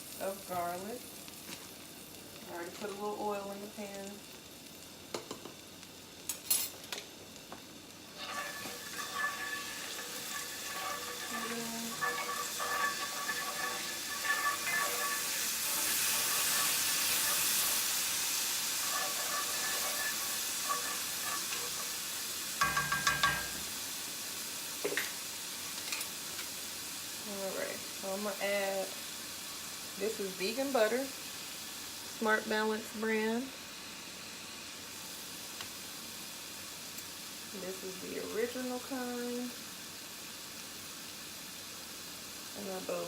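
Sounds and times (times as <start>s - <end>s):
garlic sizzling in hot oil: 0.0s - 43.0s
utensil knocking against pan: 22.6s - 23.6s.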